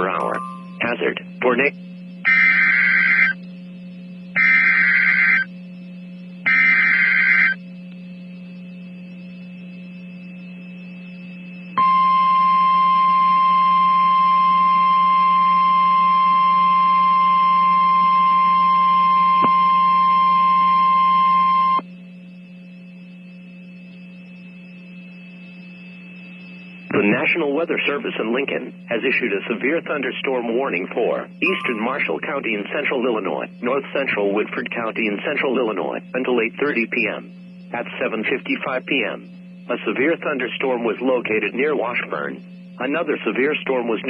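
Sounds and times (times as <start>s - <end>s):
steady alarm tone: 0.0s - 1.1s, 1.9s - 5.6s, 6.4s - 7.7s, 8.6s - 33.6s
low steady hum: 0.0s - 44.0s
screechy digital data bursts: 2.2s - 3.4s, 4.3s - 5.5s, 6.4s - 7.6s.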